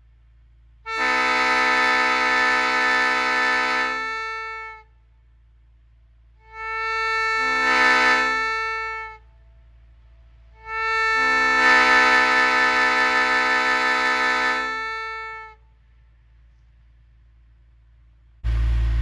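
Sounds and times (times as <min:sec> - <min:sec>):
railroad air horn blasts: 0:00.8 - 0:05.2, 0:06.3 - 0:15.9.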